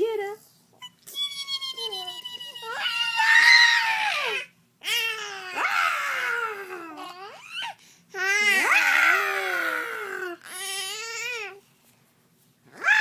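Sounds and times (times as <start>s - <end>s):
high-pitched wailing cries: 1.1s - 11.6s, 12.8s - 13.0s.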